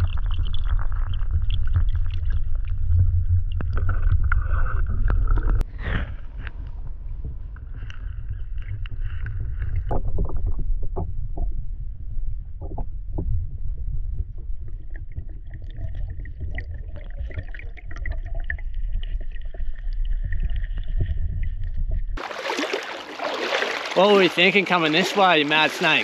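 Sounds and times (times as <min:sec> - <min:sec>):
wind rumble on microphone: 0:00.0 - 0:22.2
sharp splashing strokes: 0:22.2 - 0:26.0.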